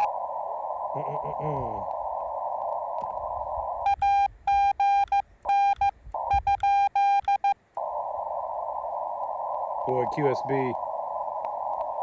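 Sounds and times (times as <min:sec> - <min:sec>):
radio band hiss: 0:00.0 - 0:04.5, 0:07.7 - 0:12.0
morse code beeps: 0:03.8 - 0:07.6.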